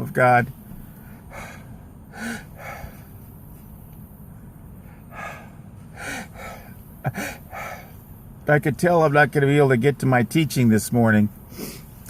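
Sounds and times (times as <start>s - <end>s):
man breathing and sniffing: 0.6s - 8.3s, 11.4s - 12.0s.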